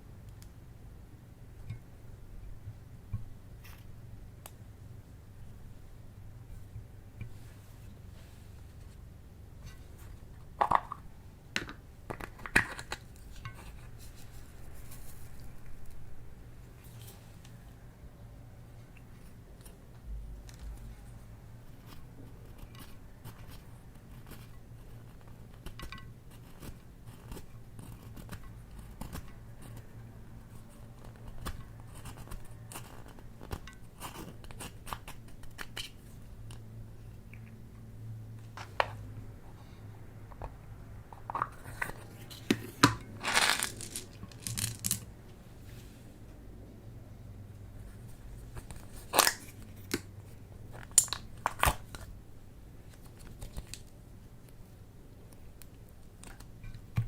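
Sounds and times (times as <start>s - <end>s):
faint low hum: 0.0s - 57.0s
hands handling small hard objects: 41.2s - 45.1s
packaging crinkling and tearing: 43.2s - 45.0s, 48.9s - 50.0s.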